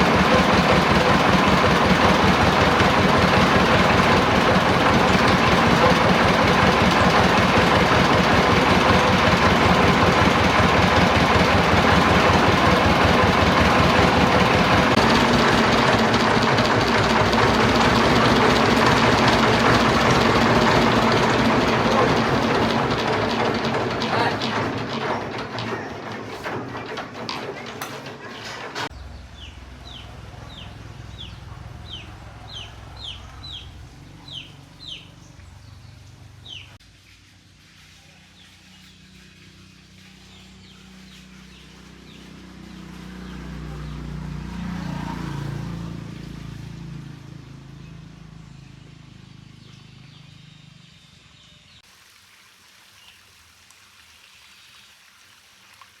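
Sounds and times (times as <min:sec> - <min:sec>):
chick chirping: 0:29.4 - 0:35.2.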